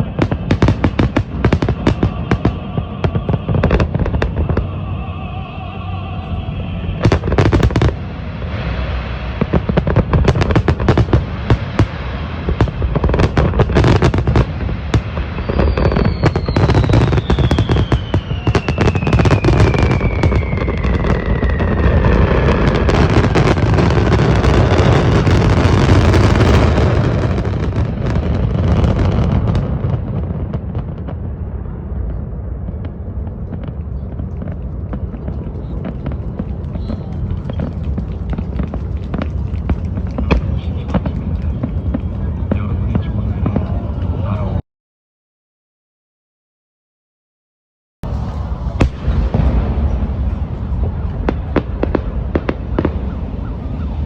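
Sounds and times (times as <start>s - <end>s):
fireworks bangs and crackles: 0.0s - 44.6s, 48.0s - 54.0s
firework whistle falling in pitch: 15.2s - 26.5s.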